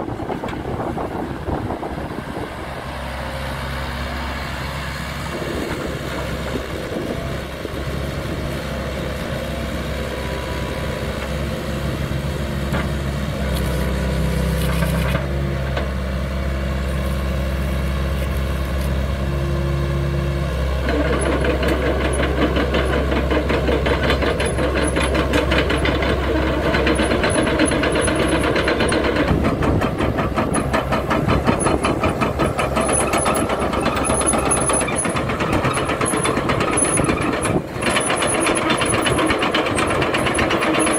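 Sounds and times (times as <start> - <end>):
excavator diesel engine running: 0.0 - 40.9
fast mechanical clatter: 20.9 - 40.9.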